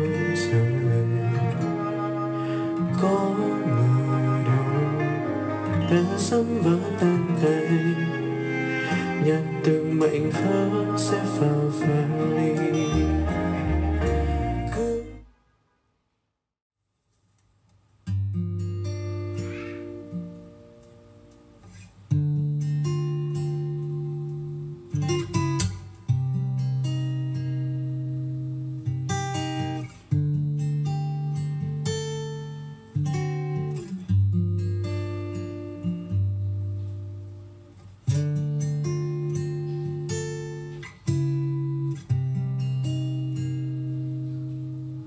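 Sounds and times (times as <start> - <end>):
acoustic guitar chords: 0.0 - 15.3, 18.1 - 45.0
acoustic guitar chords strummed: 2.4 - 15.2.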